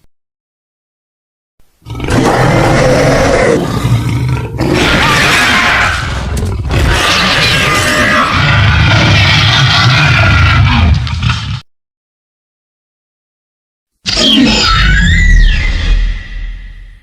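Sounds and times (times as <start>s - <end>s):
giant monster roar: 1.8s - 11.5s.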